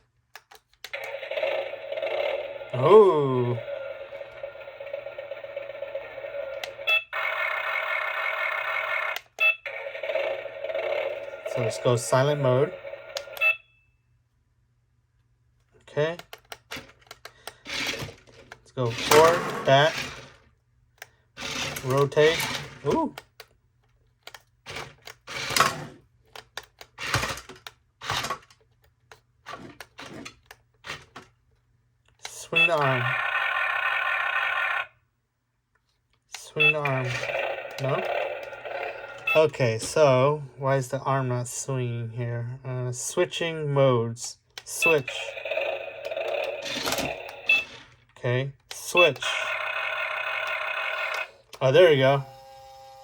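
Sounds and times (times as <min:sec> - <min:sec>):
small electric gear motors: 0:18.8 - 0:20.4, 0:21.4 - 0:22.9, 0:45.1 - 0:47.9, 0:49.2 - 0:51.4, 0:52.1 - 0:53.0
toy electronic sound effects and music: 0:32.5 - 0:35.0, 0:36.7 - 0:39.5, 0:49.2 - 0:51.4.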